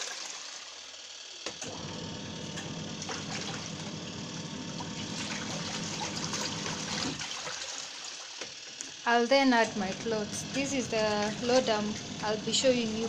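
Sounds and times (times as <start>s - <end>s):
washing machine motor humming: 0.0s - 13.0s
water sloshing: 4.8s - 8.4s, 9.6s - 13.0s.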